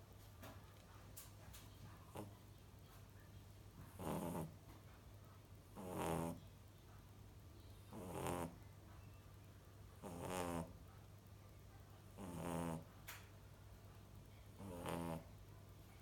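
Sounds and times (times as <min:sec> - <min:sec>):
puppy snoring: 0:02.1 - 0:02.4, 0:03.8 - 0:04.6, 0:05.7 - 0:06.4, 0:07.9 - 0:08.6, 0:10.0 - 0:10.8, 0:12.1 - 0:12.9, 0:14.6 - 0:15.4.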